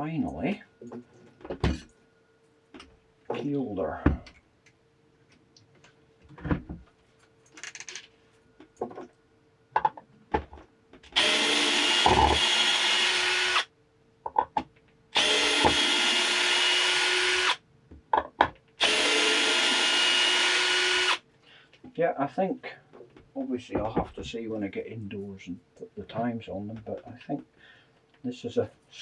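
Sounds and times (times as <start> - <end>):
cordless drill running: 11.2 - 13.7, 15.2 - 17.6, 18.8 - 21.2.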